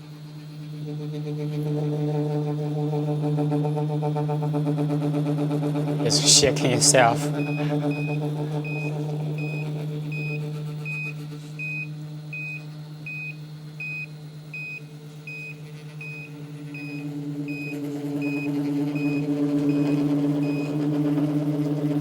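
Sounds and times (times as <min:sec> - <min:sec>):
electric hum of toy roller: 0:07.4 - 0:13.2, 0:13.8 - 0:22.0.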